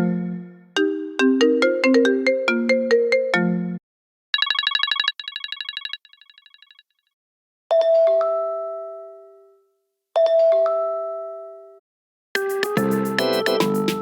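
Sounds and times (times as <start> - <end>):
phone ringtone melody: 4.4 - 6.9.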